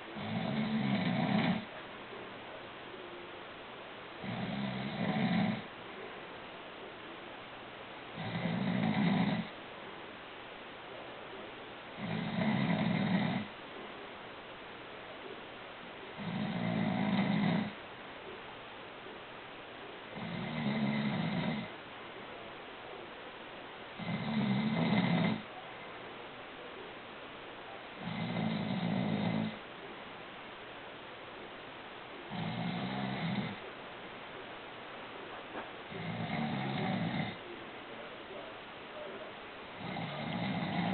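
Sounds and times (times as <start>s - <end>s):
person snoring: 0.2s - 1.7s, 4.2s - 5.6s, 8.2s - 9.5s, 12.0s - 13.5s, 16.2s - 17.8s, 20.1s - 21.7s, 28.0s - 29.6s, 32.3s - 33.6s, 35.9s - 37.4s, 39.8s - 40.9s.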